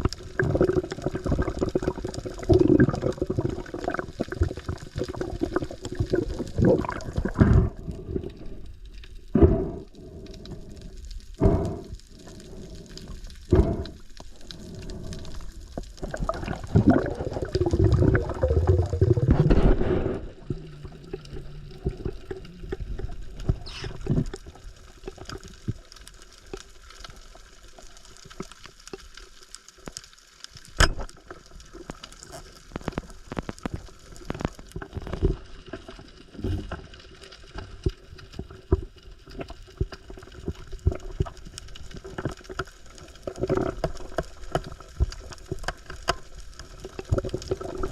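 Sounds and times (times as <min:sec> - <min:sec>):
water gurgling and sloshing: 0:00.0 - 0:28.6, 0:30.7 - 0:47.9.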